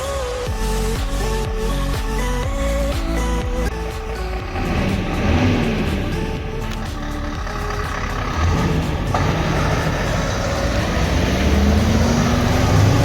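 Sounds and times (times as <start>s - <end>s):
heavy truck engine pulling away: 3.7s - 13.0s.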